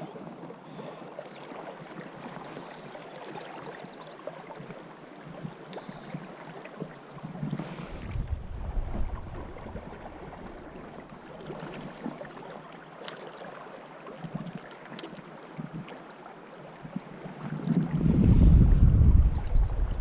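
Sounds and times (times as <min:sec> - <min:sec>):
river water flowing: 0:00.0 - 0:18.0
wind buffeting microphone: 0:07.3 - 0:10.8, 0:17.5 - 0:20.0.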